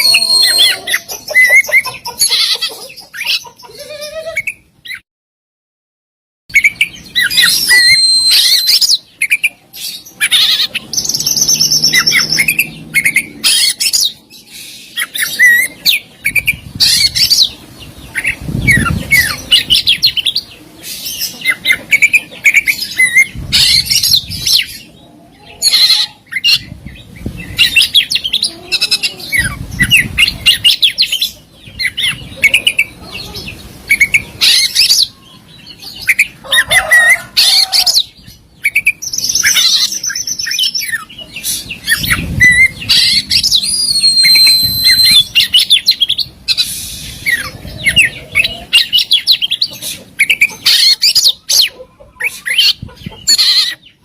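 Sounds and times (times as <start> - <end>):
bird singing whistles and trills: 0.0 - 1.7, 6.5 - 17.5, 38.6 - 49.6.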